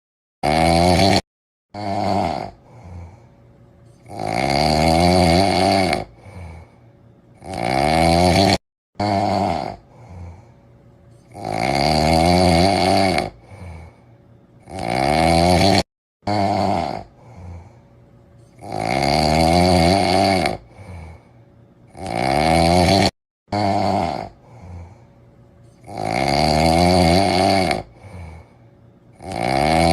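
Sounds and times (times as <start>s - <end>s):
dog snoring: 0.4s - 29.9s
quiet breathing: 2.5s - 4.1s, 6.1s - 7.2s, 9.8s - 11.3s, 13.4s - 14.5s, 17.0s - 18.6s, 20.6s - 21.8s, 24.2s - 25.9s, 27.9s - 29.2s.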